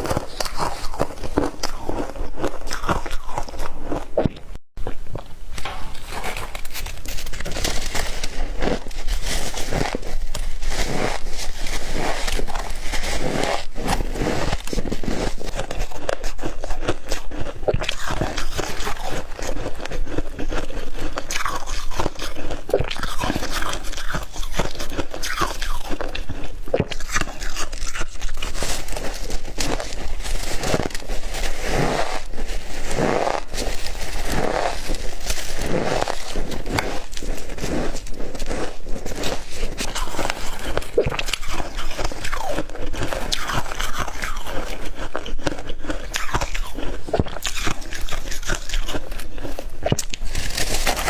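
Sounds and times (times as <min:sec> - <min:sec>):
person chewing crunchy ice: 0:00.0 - 0:51.0.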